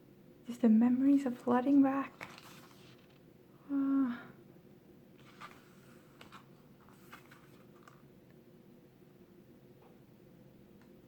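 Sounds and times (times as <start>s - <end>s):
book pages turning: 2.0s - 3.2s, 5.2s - 8.1s
person humming: 3.6s - 4.4s.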